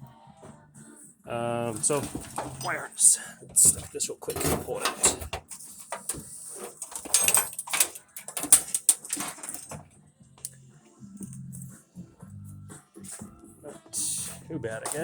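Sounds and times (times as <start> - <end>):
wires and connectors rustling: 1.6 - 10.6, 14.6 - 15.0.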